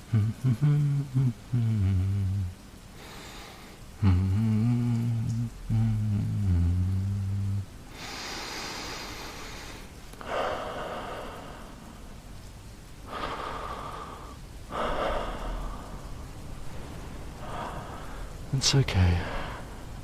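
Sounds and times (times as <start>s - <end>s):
man humming low note: 0.0s - 2.6s, 4.0s - 7.8s
steady rain: 0.0s - 20.0s
slow breaths close to microphone: 7.9s - 12.2s, 13.0s - 18.5s.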